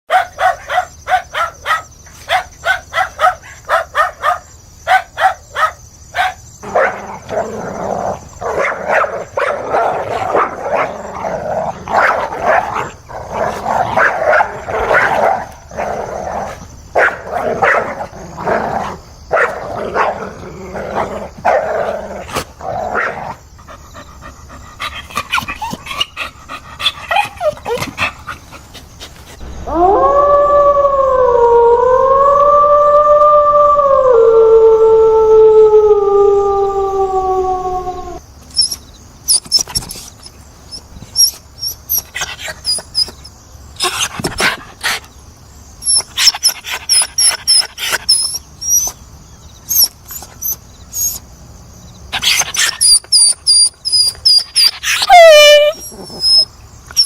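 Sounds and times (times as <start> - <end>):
dog barking: 0.1 - 7.3, 8.4 - 11.0, 11.9 - 12.9, 13.5 - 15.6, 17.0 - 18.0, 19.3 - 20.2.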